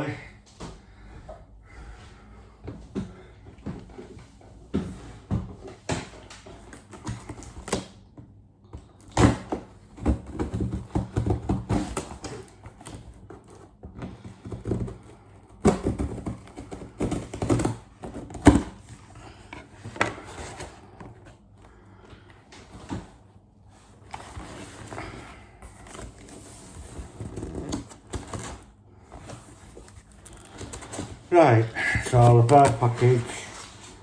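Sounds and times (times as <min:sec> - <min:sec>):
cardboard scrapes and rustles: 0:22.6 - 0:34.0.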